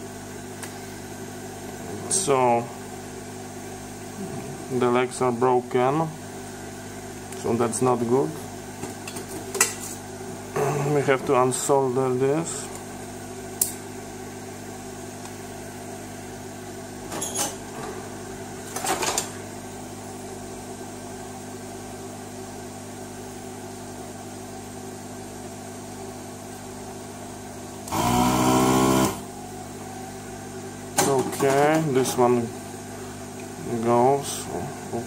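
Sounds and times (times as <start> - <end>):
electrical hum: 0.0 - 35.0
loud buzz: 27.9 - 29.3.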